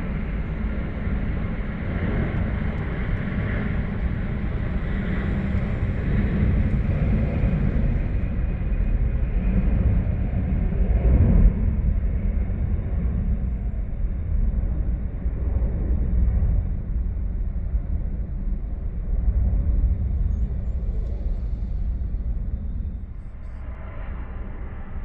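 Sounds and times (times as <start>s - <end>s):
jet taking off: 0.0s - 11.8s.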